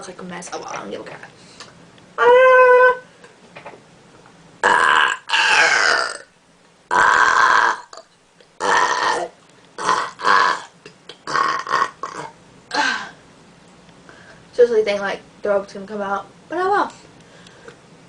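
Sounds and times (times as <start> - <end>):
girl burping: 4.6 - 6.3, 8.6 - 13.2.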